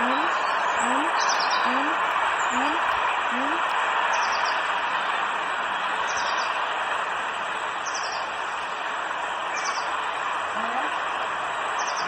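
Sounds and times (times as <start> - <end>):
small bird calling: 0.0 - 3.7.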